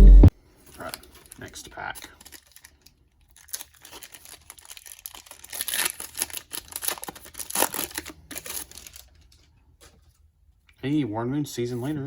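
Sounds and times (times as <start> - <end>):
wrapper tearing and crinkling: 0.6 - 9.4.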